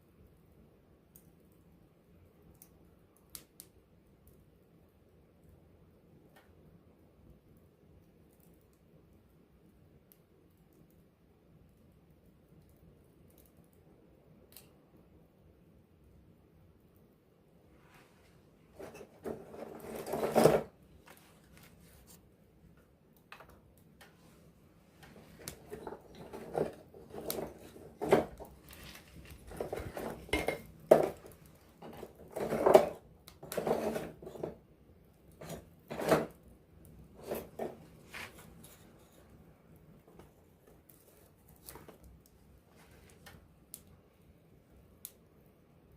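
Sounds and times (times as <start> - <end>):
campfire wood crackling and popping: 2.3 - 4.6, 25.0 - 34.4.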